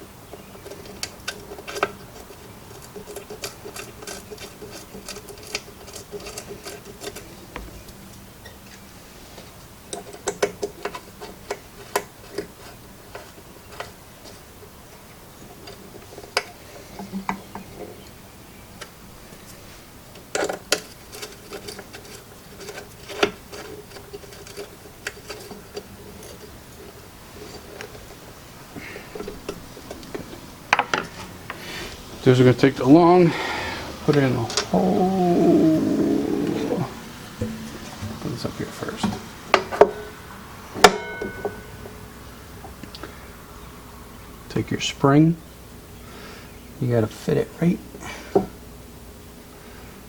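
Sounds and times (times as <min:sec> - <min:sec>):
loud knock: 0:37.4 - 0:39.3.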